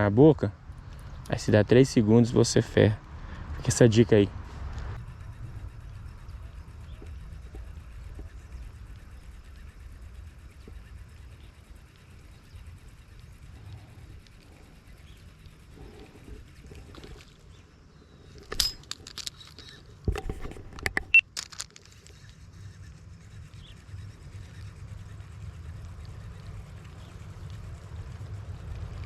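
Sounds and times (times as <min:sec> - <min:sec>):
sharp clicks and knocks: 0:18.4 - 0:21.9.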